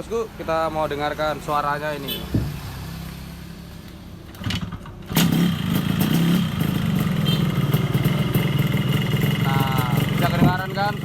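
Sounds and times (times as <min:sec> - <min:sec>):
two-stroke engine running roughly: 0:05.1 - 0:11.0.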